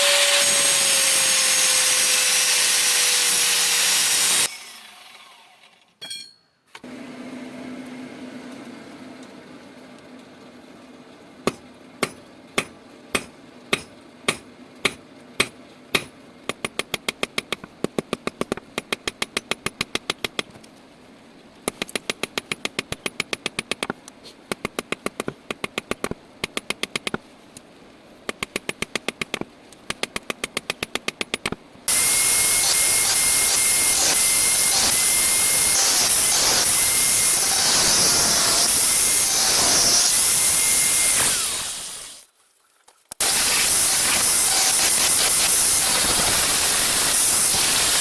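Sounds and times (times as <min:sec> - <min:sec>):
loud power tool running: 0:00.0 - 0:05.6, 0:31.9 - 0:42.2
hammer striking metal: 0:06.0 - 0:06.5, 0:11.5 - 0:17.7.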